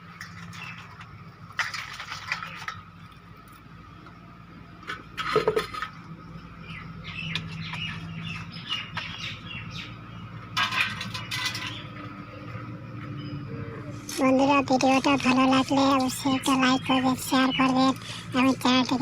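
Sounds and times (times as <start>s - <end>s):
birds chirping: 0.0s - 1.5s, 5.4s - 19.0s.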